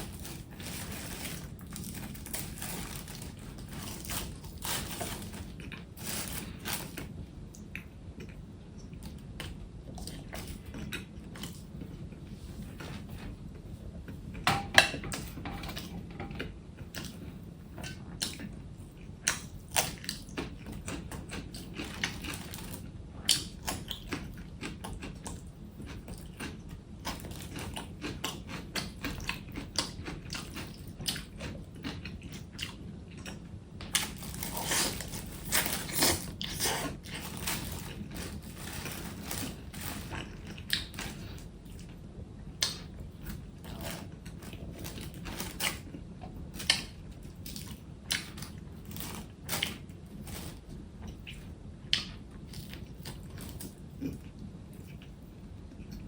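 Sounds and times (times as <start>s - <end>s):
faint steady hum: 0.0s - 56.0s
chewing and biting: 19.2s - 41.9s.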